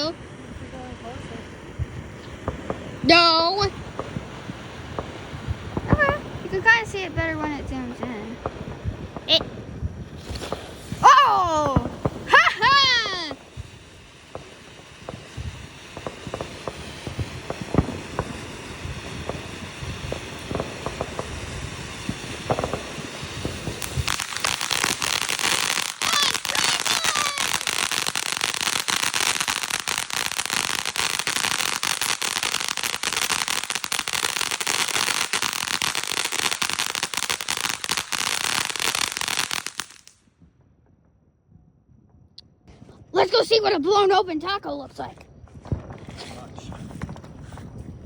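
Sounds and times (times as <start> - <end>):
firework crackling and popping: 0.0 - 40.6, 42.4 - 48.0.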